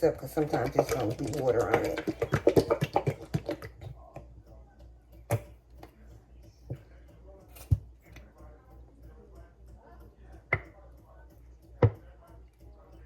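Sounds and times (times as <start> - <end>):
containers knocking on counter: 0.5 - 3.9.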